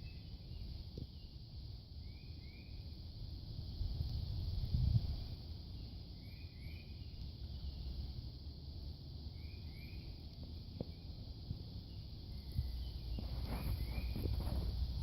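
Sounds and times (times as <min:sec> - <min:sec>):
low rumble of wind: 0:00.0 - 0:15.0
steady high-pitched hiss: 0:00.0 - 0:15.0.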